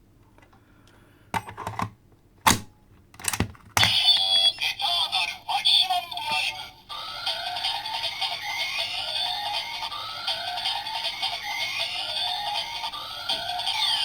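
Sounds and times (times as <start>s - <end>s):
toy electronic jingle: 6.9s - 14.0s.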